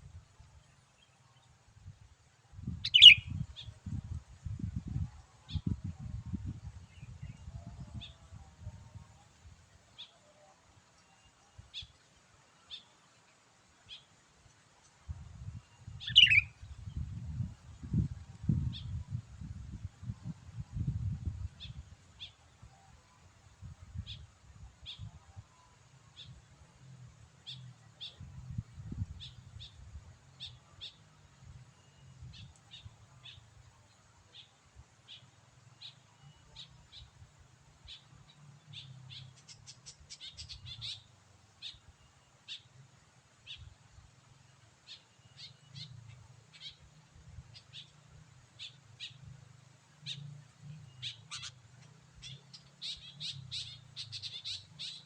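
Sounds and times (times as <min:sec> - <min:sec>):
bulbul chirping: 0:02.9 - 0:03.2, 0:16.1 - 0:16.4.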